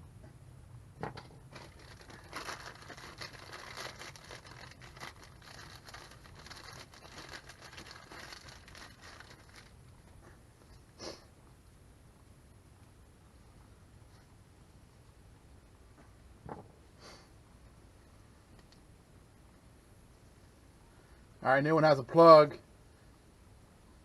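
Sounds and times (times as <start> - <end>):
packaging crinkling: 1.5 - 9.8.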